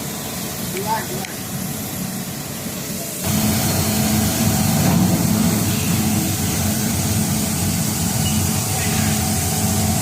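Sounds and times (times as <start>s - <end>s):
quilting machine drone: 3.2s - 10.0s.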